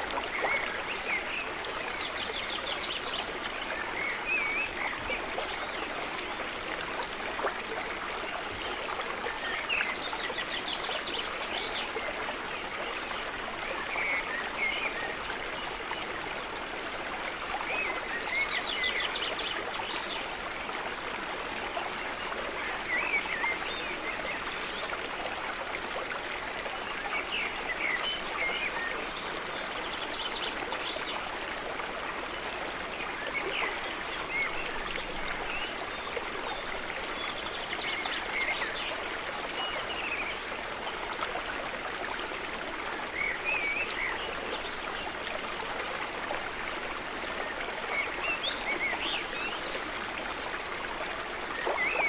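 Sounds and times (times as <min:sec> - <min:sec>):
stream water flowing: 0:00.0 - 0:52.0
water gurgling: 0:20.4 - 0:52.0.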